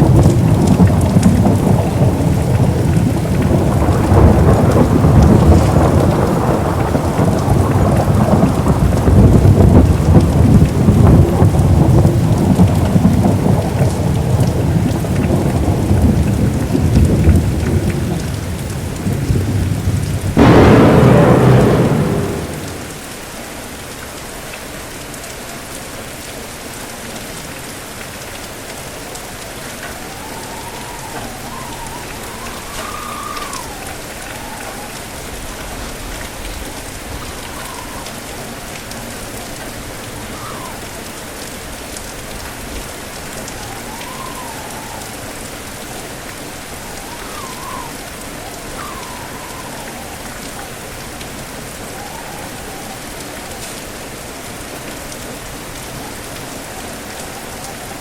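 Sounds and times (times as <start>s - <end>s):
heavy rain: 0.0s - 58.0s
wind gusts whistling: 20.3s - 23.1s.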